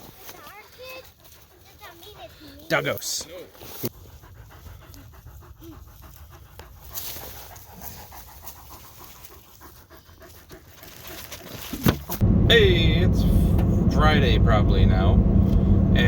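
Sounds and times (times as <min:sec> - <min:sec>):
dog panting: 0:00.1 - 0:11.7.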